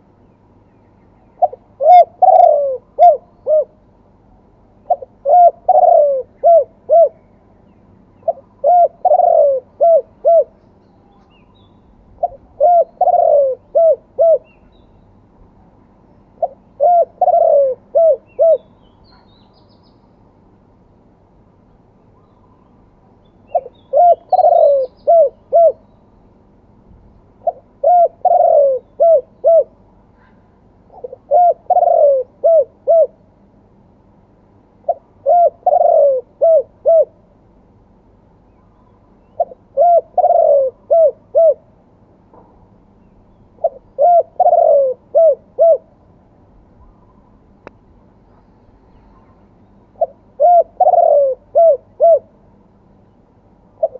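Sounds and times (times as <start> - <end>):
dove cooing: 1.4 - 3.8, 4.9 - 7.2, 8.2 - 10.6, 12.1 - 14.6, 16.4 - 19.3, 23.5 - 25.8, 27.4 - 29.8, 30.9 - 33.2, 34.8 - 37.2, 39.3 - 41.7, 43.6 - 46.0, 50.0 - 52.4.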